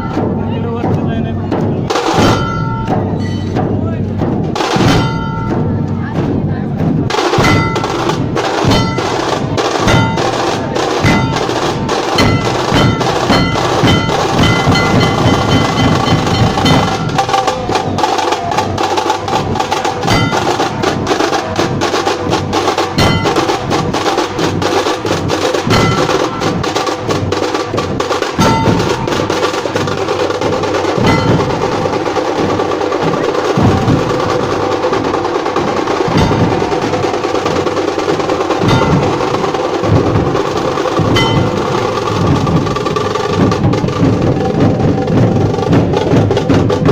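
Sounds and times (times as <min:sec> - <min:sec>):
barrel drums beaten hard: 0:00.0 - 0:46.9
ringing metallic tones: 0:02.0 - 0:03.8, 0:04.8 - 0:06.1, 0:07.3 - 0:21.2, 0:22.6 - 0:24.4, 0:25.6 - 0:44.1.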